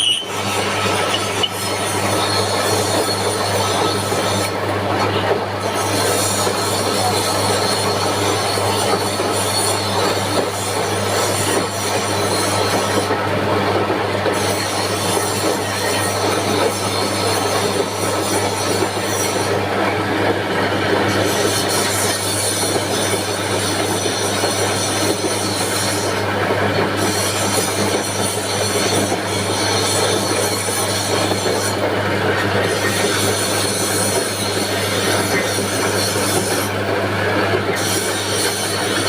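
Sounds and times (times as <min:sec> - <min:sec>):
metal scraping and squealing: 0:00.0 - 0:13.2.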